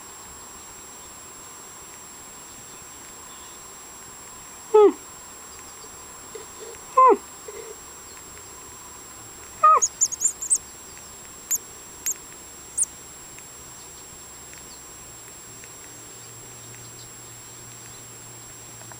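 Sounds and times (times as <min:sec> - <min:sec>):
baby birds peeping: 0:09.6 - 0:11.1.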